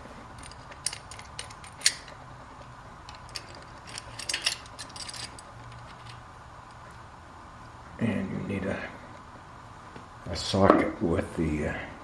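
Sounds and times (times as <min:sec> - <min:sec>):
faint steady hum: 0:00.0 - 0:12.0
small metal hardware clinking: 0:00.3 - 0:02.2, 0:03.0 - 0:06.2.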